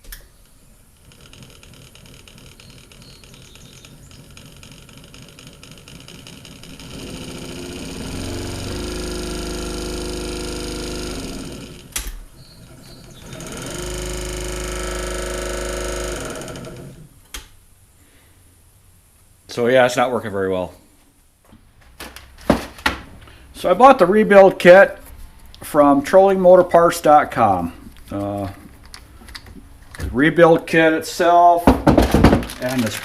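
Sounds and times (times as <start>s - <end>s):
electric motor running: 1.0s - 12.0s, 12.6s - 17.1s.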